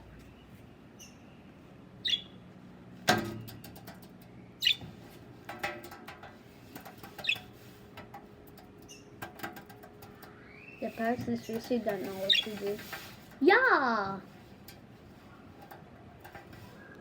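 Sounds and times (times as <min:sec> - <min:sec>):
parrots chirping: 0:02.0 - 0:02.4, 0:04.6 - 0:04.8, 0:12.2 - 0:12.6.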